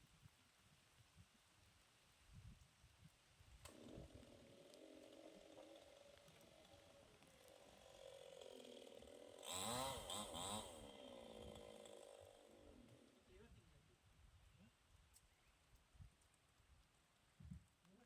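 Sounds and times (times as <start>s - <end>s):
faint chainsaw engine revving: 3.6s - 14.8s.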